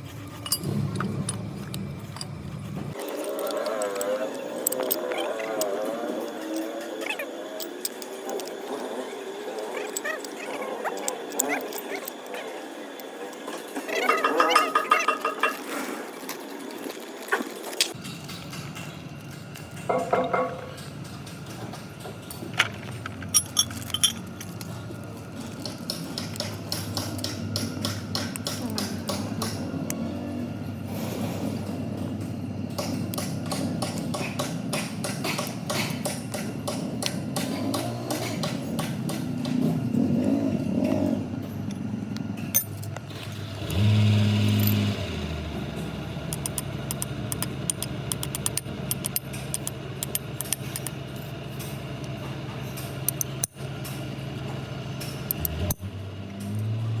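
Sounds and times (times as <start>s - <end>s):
metal tools clinking and knocking: 0.3s - 2.3s, 13.5s - 16.4s, 17.8s - 29.7s, 42.5s - 43.0s, 46.3s - 54.1s.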